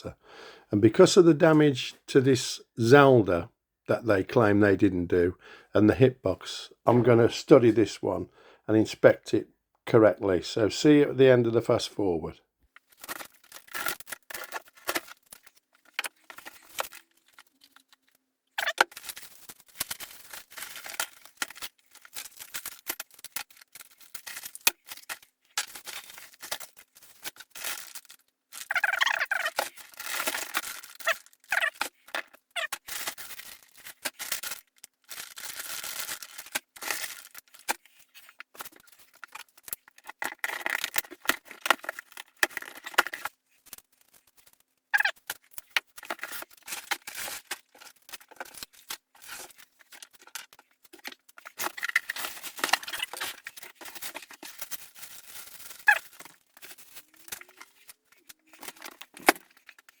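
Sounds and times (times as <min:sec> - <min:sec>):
packaging rustling: 0:12.8 - 1:00.0.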